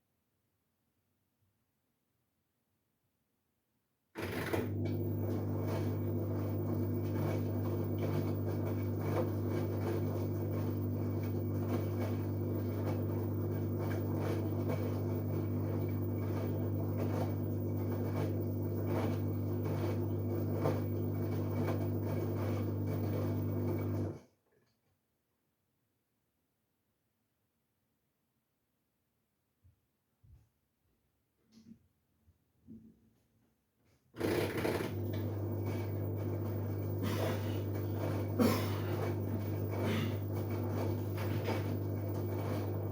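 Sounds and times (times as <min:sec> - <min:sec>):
washing machine humming: 0:04.2 - 0:24.2, 0:34.2 - 0:42.9.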